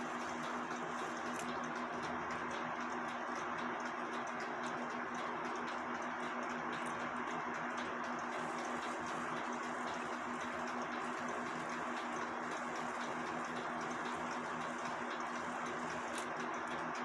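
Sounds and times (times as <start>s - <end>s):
background hum and hiss: 0.0s - 17.0s.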